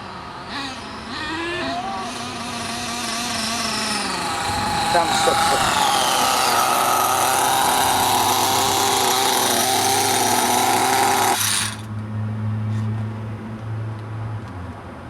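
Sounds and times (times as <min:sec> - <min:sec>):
rc truck engine revving: 0:00.0 - 0:11.9.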